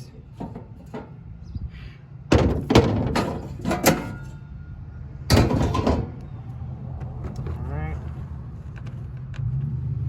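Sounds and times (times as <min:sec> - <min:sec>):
loud clattering thunks: 0:00.3 - 0:01.2, 0:02.3 - 0:04.3, 0:05.3 - 0:06.3.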